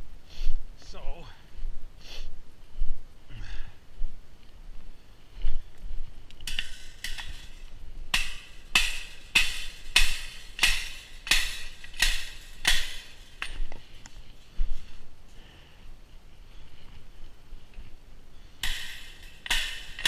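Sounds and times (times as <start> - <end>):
hammer blows ringing: 6.5 - 13.7, 18.6 - 20.0.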